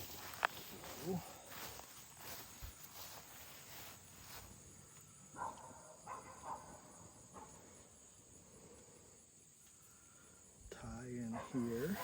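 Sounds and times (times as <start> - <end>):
footsteps: 0.0 - 5.7
high insect drone: 0.0 - 12.0.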